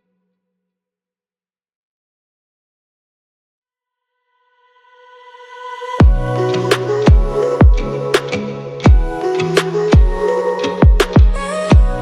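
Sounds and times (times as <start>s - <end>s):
beat-driven music track: 6.0s - 12.0s.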